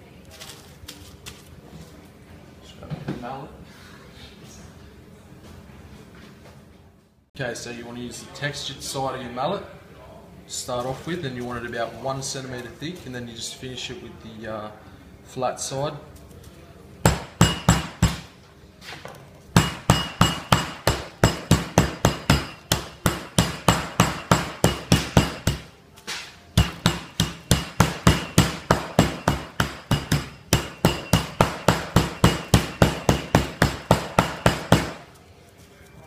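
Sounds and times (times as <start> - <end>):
meat mallet pounding chicken: 19.6 - 25.7, 26.6 - 35.0.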